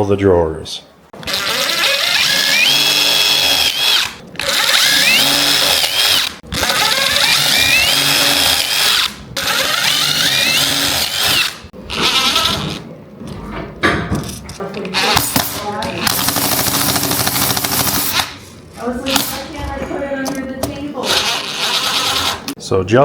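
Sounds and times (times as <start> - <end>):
power drill whining: 1.2 - 12.8, 21.0 - 22.6.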